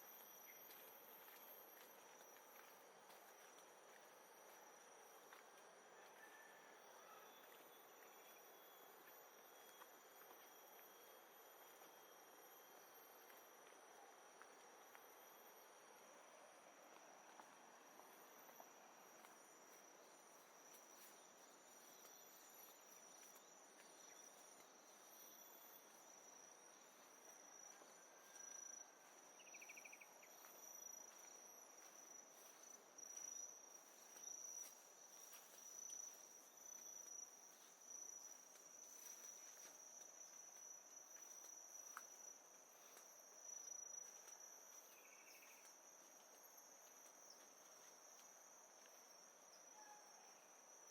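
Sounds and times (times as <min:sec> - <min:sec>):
insects trilling: 0:00.0 - 0:50.9.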